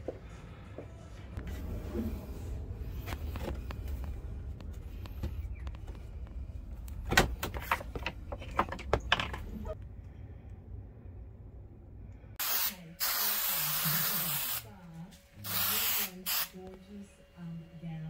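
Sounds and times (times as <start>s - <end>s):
low steady rumble: 0.1s - 12.9s
knocks and clatters of tools: 7.0s - 9.8s.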